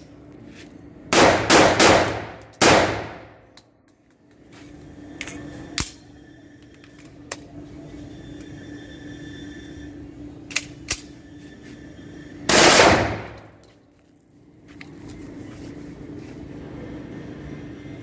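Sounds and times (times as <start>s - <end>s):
pistol shot: 1.2s - 3.3s, 12.5s - 13.4s.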